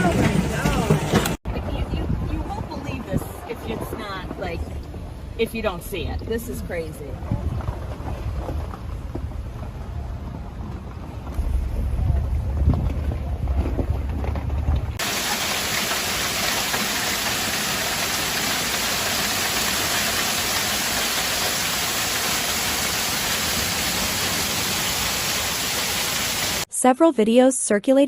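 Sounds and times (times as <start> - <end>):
heavy rain and hail: 0.0 - 1.4, 11.3 - 26.7
wind buffeting microphone: 0.0 - 5.4, 7.0 - 15.0.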